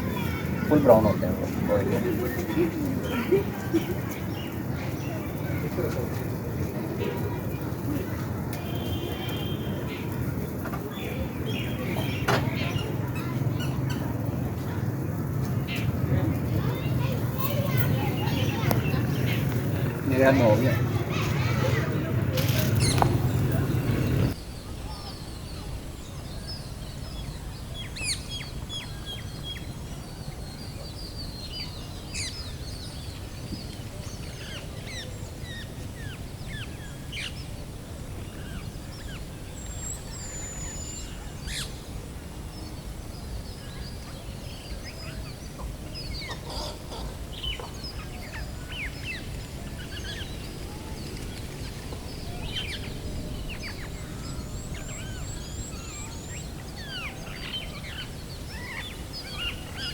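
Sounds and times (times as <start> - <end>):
low outdoor rumble: 0.0 - 24.7
small birds chirping: 0.0 - 59.9.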